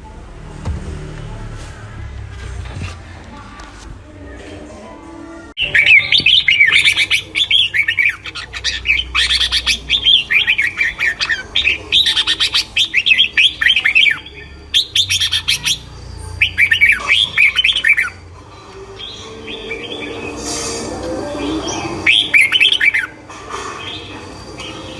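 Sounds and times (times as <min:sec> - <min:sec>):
songbirds singing and chirping: 0:05.6 - 0:24.9.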